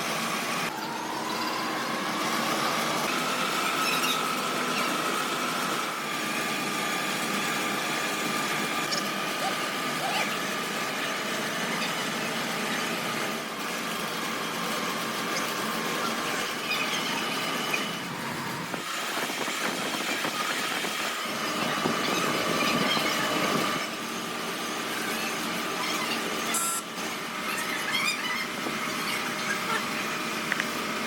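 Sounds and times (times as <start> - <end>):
workshop machine running: 0.0 - 31.0
thin steady whine: 16.6 - 24.0.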